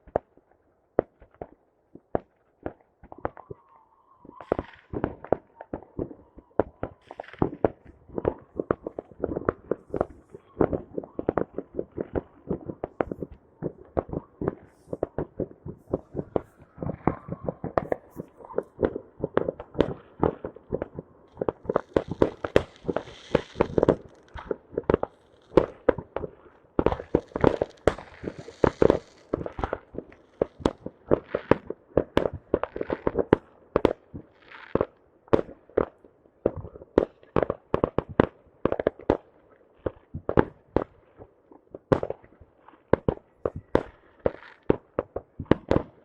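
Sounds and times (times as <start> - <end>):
fireworks crackling burst: 4.3 - 34.8
fireworks bangs and cracks: 4.3 - 46.0.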